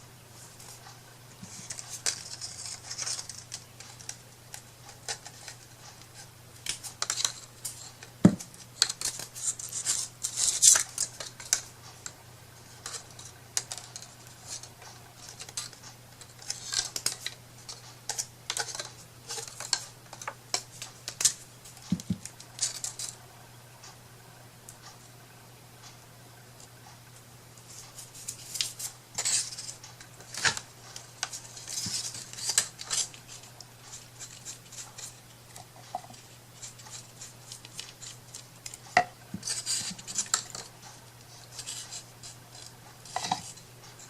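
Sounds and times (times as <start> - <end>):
faint low hum: 0.0 - 44.0
light clicks taps and rustles: 12.8 - 23.2, 26.6 - 44.0.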